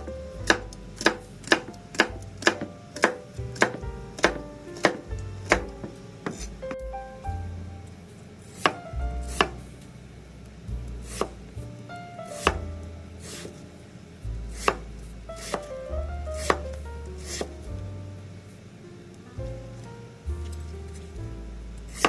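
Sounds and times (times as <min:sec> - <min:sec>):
soft background music: 0:00.0 - 0:22.0
knife chopping on cutting board: 0:02.5 - 0:05.8.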